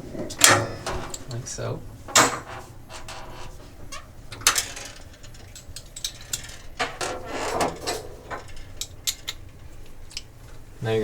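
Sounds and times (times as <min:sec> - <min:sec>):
rattling scrape: 0:00.0 - 0:10.3
metal tools clicking: 0:02.1 - 0:10.6.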